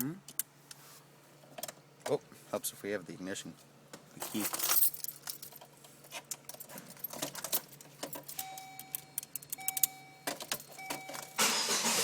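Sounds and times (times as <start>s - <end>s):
car keys jingling: 4.2s - 11.4s
electronic beeps: 8.4s - 11.4s.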